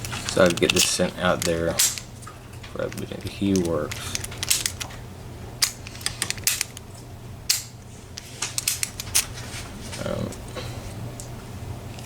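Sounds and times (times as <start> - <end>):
padlock metallic clicks: 0.0 - 2.1, 2.8 - 5.0, 5.6 - 6.8.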